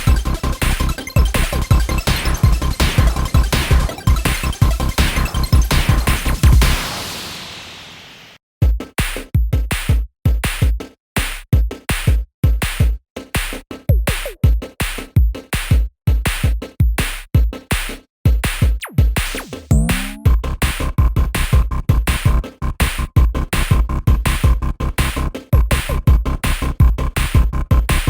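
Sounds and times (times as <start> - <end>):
rising synth sweep: 0.0 - 8.3
electronic music with drum-machine beat: 0.0 - 28.0.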